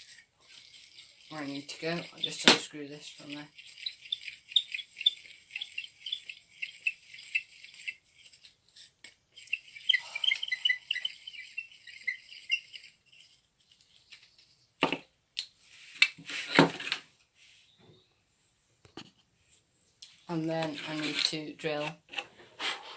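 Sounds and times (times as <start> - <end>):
hand drill gears ticking: 0.0 - 14.4
wood and tools knocking: 14.1 - 15.1.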